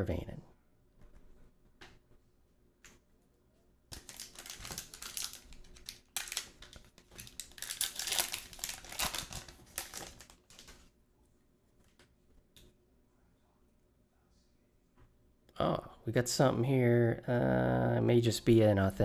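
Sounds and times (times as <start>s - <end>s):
wrapper tearing and crinkling: 3.9s - 10.9s.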